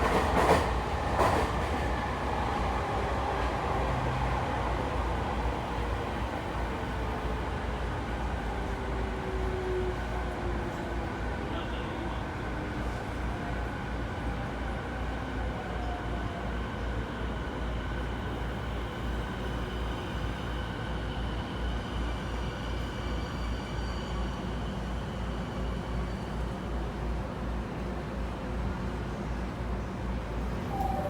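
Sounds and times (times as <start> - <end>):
train wheels rumbling on rail: 0.0 - 11.5.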